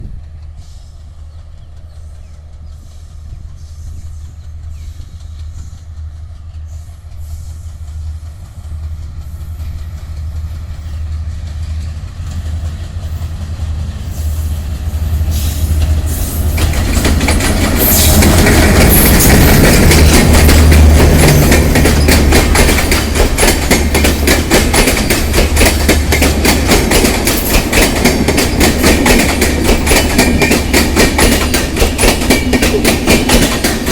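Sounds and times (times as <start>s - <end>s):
train engine rumble: 0.0s - 33.9s
train wheels clattering over rails: 0.0s - 33.9s.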